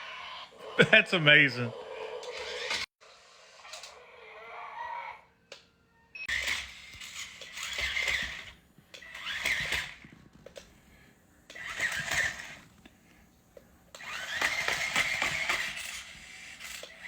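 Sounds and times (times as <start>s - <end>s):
toy dinosaur clicking bursts: 6.3s - 10.7s, 14.0s - 17.0s.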